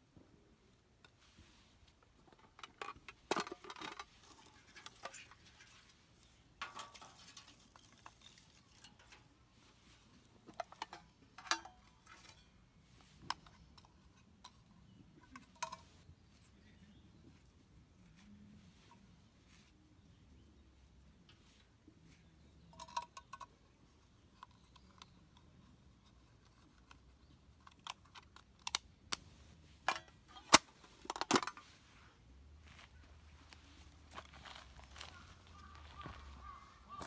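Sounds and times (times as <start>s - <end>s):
small objects clicking and tapping: 2.2s - 9.3s, 22.6s - 29.2s.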